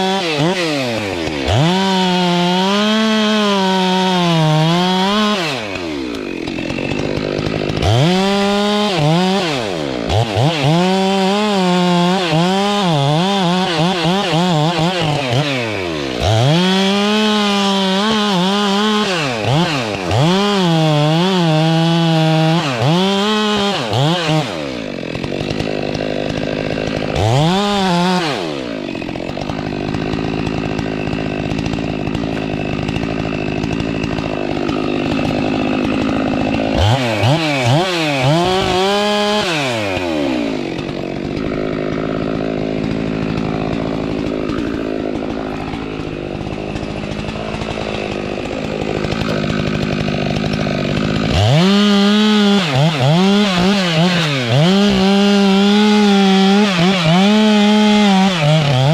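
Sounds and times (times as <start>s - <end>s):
chainsaw cutting wood: 0.0s - 58.9s
chainsaw idling: 0.0s - 58.9s.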